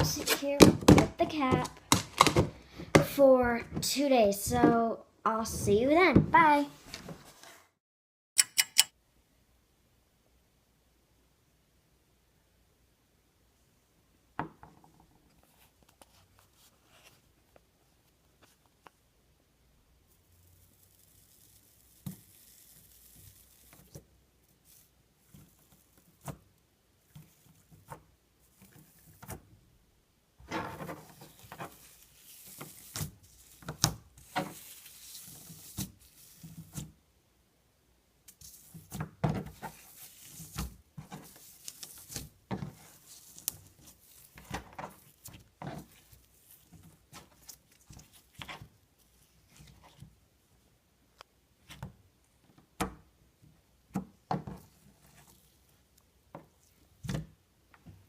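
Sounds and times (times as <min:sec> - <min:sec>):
soft rustling of slime: 0:15.2 - 0:19.1, 0:20.0 - 0:29.6, 0:30.7 - 0:37.0, 0:38.2 - 0:50.7, 0:51.3 - 0:58.0.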